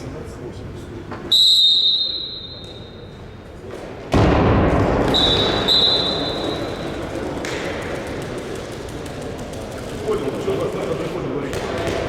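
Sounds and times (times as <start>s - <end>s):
referee's whistle blasts: 1.3s - 3.1s, 5.1s - 6.8s
sudden loud burst of crowd noise: 4.1s - 7.8s.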